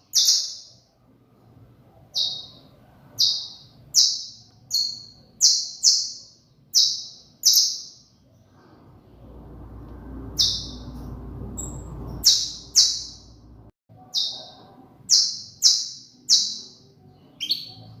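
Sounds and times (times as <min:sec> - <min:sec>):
canary singing: 0:00.0 - 0:01.0, 0:02.0 - 0:08.3, 0:10.2 - 0:18.0
low background rumble: 0:08.2 - 0:13.7.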